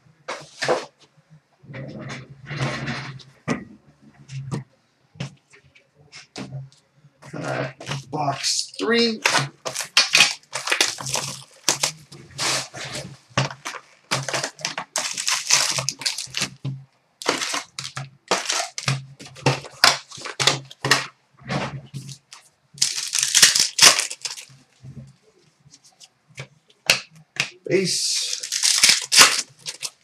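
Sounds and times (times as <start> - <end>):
plastic wrapping crinkling and tearing: 7.4 - 21.1, 21.9 - 24.9, 28.0 - 30.0.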